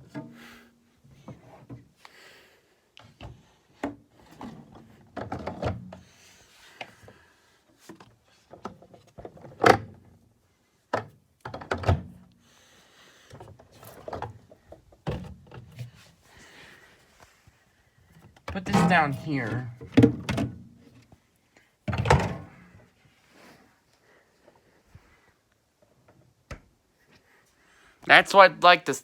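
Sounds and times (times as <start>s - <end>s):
plastic bottles clunking and sliding: 3.0s - 6.2s, 6.8s - 10.0s, 10.9s - 12.2s, 13.2s - 16.4s, 18.2s - 21.1s, 21.9s - 22.9s.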